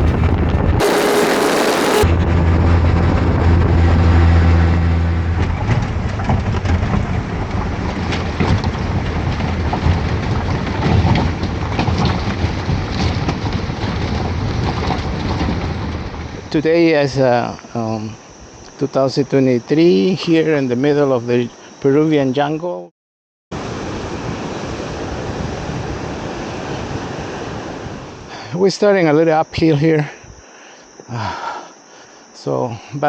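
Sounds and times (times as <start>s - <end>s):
rumbling road noise: 0.0s - 18.7s
vehicle engine humming: 0.0s - 18.8s.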